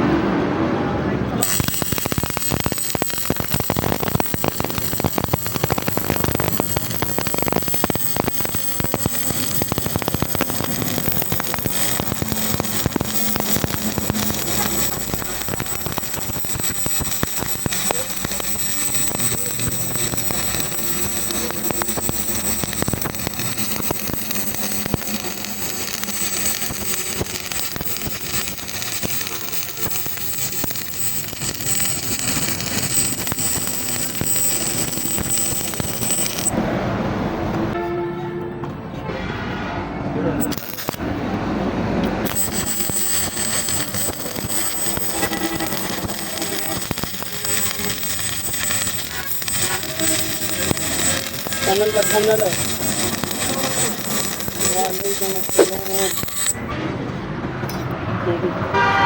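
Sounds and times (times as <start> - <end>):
arc welding crackling hiss: 1.4 - 36.6, 40.4 - 41.1, 42.2 - 56.6.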